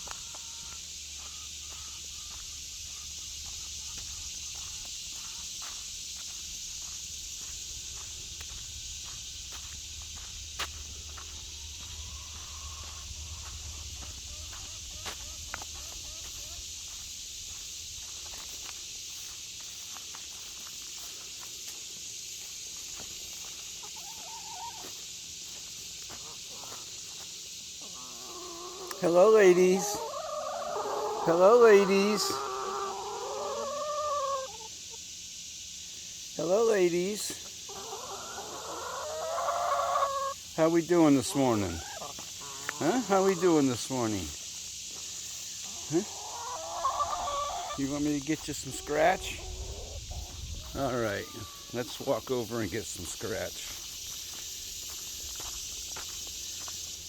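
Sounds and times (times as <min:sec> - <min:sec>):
chickens clucking: 0:00.0 - 0:21.1, 0:22.9 - 0:35.1, 0:36.4 - 0:44.4, 0:45.1 - 0:54.9
steady high hiss: 0:00.0 - 0:57.0
hen calling: 0:11.0 - 0:17.0, 0:27.8 - 0:34.7, 0:36.4 - 0:44.3, 0:45.6 - 0:52.2.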